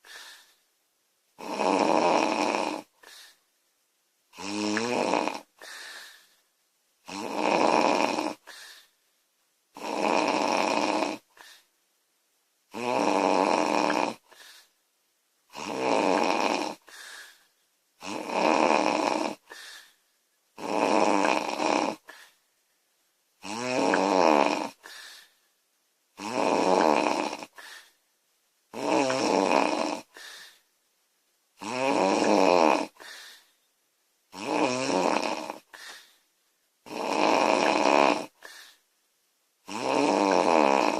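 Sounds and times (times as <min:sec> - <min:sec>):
quiet breath sound: 0:00.0 - 0:00.8, 0:02.6 - 0:03.6, 0:04.3 - 0:06.6, 0:08.1 - 0:09.2, 0:10.0 - 0:11.9, 0:13.1 - 0:14.9, 0:15.7 - 0:18.3, 0:18.9 - 0:22.9, 0:23.8 - 0:25.6, 0:26.7 - 0:28.1, 0:29.0 - 0:30.9, 0:32.3 - 0:33.8, 0:35.2 - 0:36.5, 0:37.6 - 0:39.1
woman snoring loudly: 0:01.4 - 0:03.1, 0:04.3 - 0:05.6, 0:07.0 - 0:08.6, 0:09.8 - 0:11.5, 0:12.7 - 0:14.4, 0:15.5 - 0:17.3, 0:18.0 - 0:19.9, 0:20.6 - 0:22.2, 0:23.4 - 0:25.0, 0:26.2 - 0:27.9, 0:28.7 - 0:30.4, 0:31.6 - 0:33.2, 0:34.3 - 0:36.0, 0:36.8 - 0:38.7, 0:39.6 - 0:40.9.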